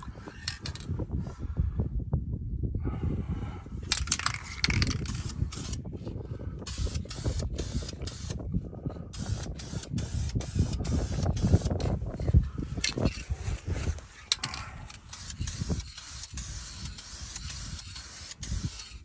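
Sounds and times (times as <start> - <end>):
spray paint can hissing: 5.0 - 5.8, 6.7 - 8.4, 9.2 - 11.8, 15.1 - 19.0.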